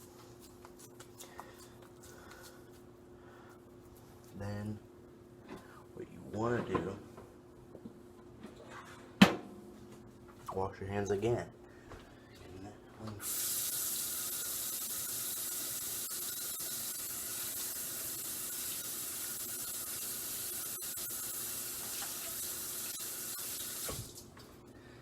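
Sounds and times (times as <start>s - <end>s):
tap water running: 13.2s - 24.4s.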